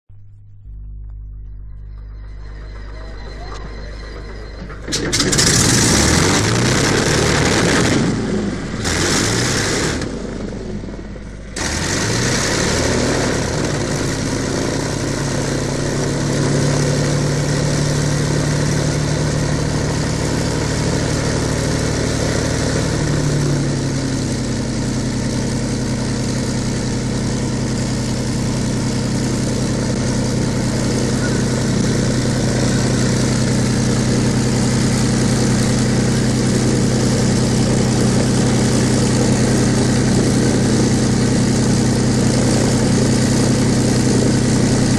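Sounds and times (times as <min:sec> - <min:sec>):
aircraft engines starting: 0:00.7 - 0:44.9.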